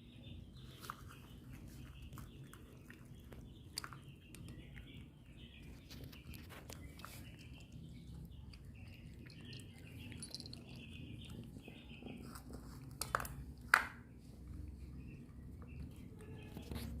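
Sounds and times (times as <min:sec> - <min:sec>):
cats chewing: 0:00.6 - 0:17.0.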